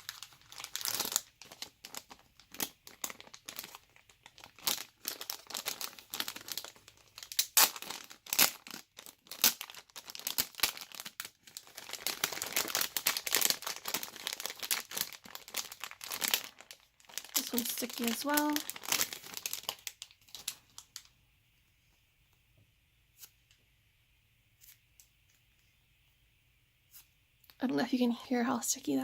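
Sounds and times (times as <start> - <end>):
plastic packaging crinkling: 0.0 - 21.1.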